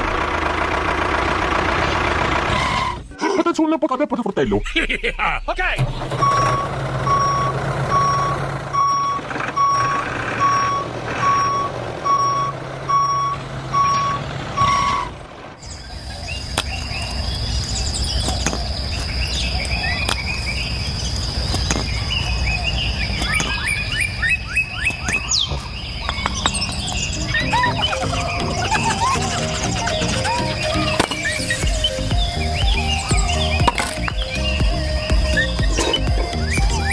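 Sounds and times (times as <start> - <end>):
reversing alarm beeping: 5.8 - 15.2.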